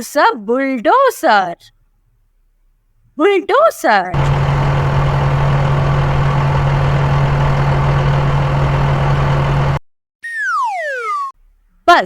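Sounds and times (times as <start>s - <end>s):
bulldozer diesel engine running: 4.2s - 9.8s
falling tone sliding down: 4.2s - 11.3s.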